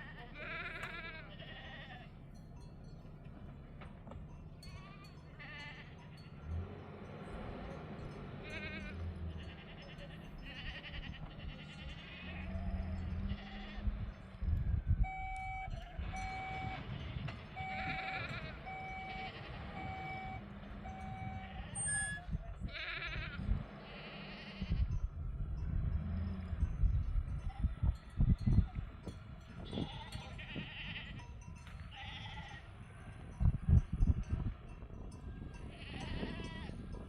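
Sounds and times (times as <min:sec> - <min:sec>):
sheep bleating: 0:00.0 - 0:02.2, 0:04.6 - 0:06.4, 0:08.4 - 0:14.0, 0:15.1 - 0:25.0, 0:29.6 - 0:31.2, 0:31.9 - 0:32.7, 0:35.6 - 0:36.8
short beeps: 0:15.0 - 0:17.0, 0:17.6 - 0:22.4.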